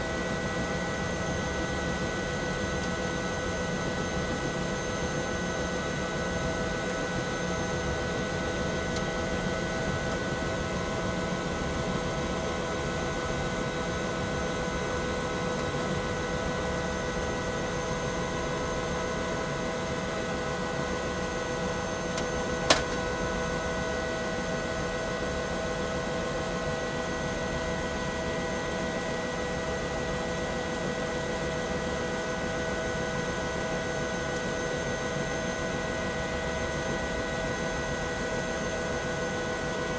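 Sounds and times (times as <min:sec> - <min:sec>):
helicopter turbine whine and drone: 0:00.0 - 0:39.9
sharp click: 0:22.2 - 0:23.0.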